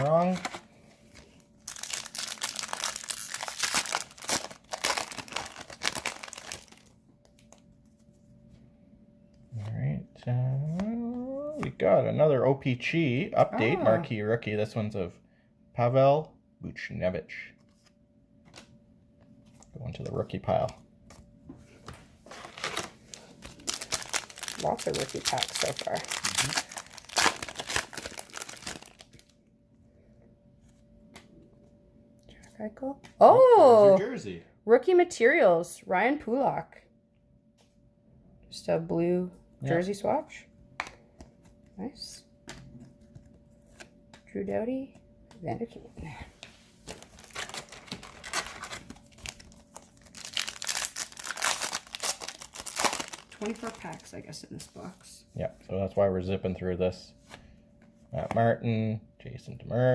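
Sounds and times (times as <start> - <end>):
wrapper crinkling and tearing: 0.0 - 7.7, 22.2 - 29.4, 46.9 - 54.2.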